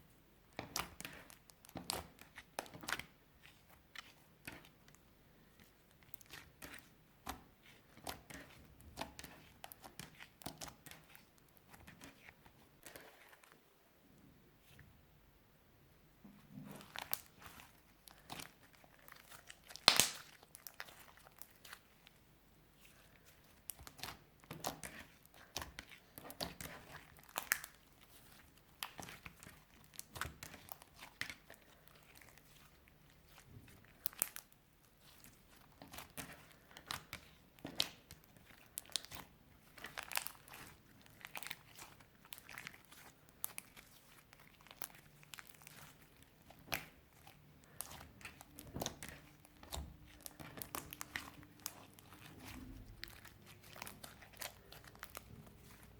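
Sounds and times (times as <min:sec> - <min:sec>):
slime squished by hand: 0:16.5 - 0:22.2, 0:22.8 - 0:55.9
slime popping: 0:18.2 - 0:21.8, 0:33.3 - 0:55.9.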